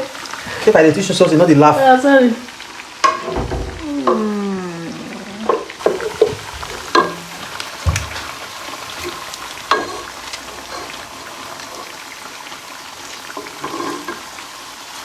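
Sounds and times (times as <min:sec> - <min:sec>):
food sizzling in hot oil: 0:00.0 - 0:15.0.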